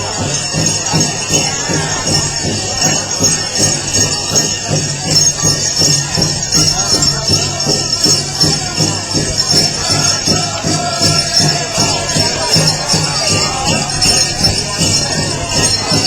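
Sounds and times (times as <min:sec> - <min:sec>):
bells jingling: 0:00.0 - 0:16.0
high singing: 0:00.0 - 0:16.0
large drum steady beat: 0:00.0 - 0:16.0.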